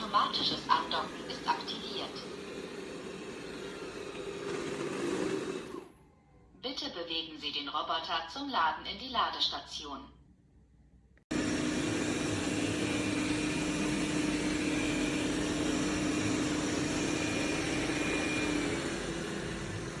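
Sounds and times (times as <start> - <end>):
robot vacuum humming: 0.0 - 6.0, 11.3 - 20.0.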